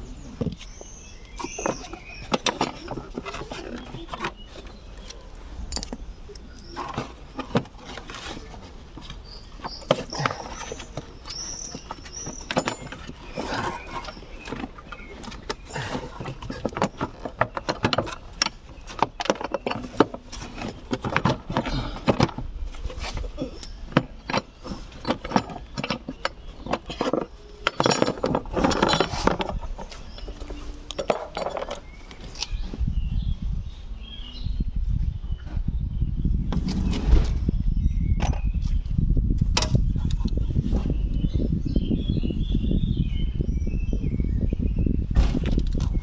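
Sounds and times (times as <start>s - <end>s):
tools clicking and clinking: 23.6s - 32.5s.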